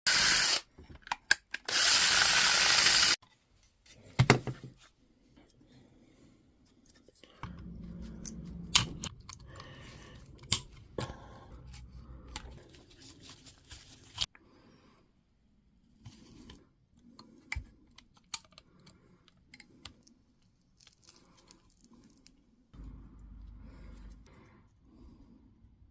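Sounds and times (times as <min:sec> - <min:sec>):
power tool burst: 0:00.1 - 0:00.6, 0:01.7 - 0:03.2
low steady hum: 0:06.0 - 0:14.2, 0:22.8 - 0:25.6.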